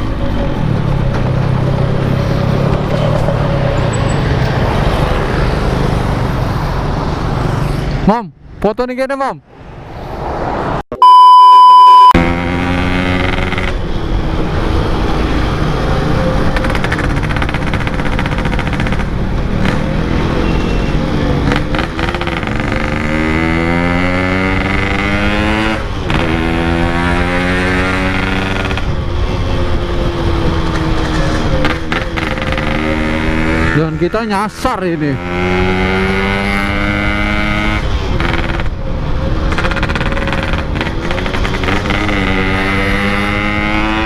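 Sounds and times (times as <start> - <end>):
two-stroke motorcycle accelerating: 12.1 - 44.0.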